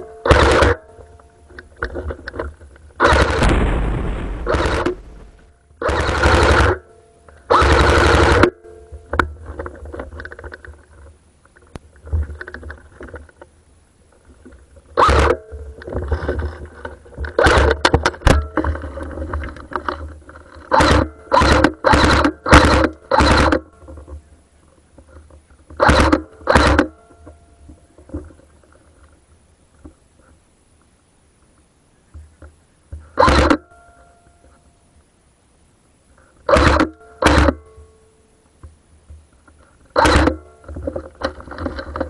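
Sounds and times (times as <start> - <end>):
airsoft guns firing on full auto: 3.0 - 6.8, 7.5 - 8.5, 20.7 - 23.6, 36.5 - 37.6
scattered shots and clicks: 3.0 - 6.8.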